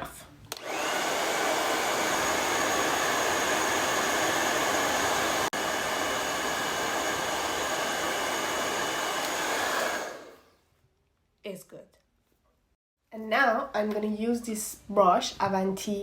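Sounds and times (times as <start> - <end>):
hair dryer running: 0.5 - 10.5.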